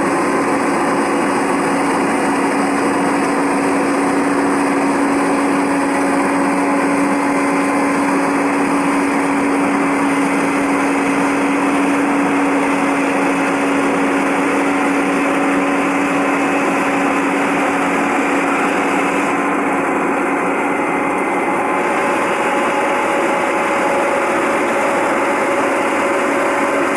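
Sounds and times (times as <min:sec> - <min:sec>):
harvester engine humming: 0:00.0 - 0:26.9.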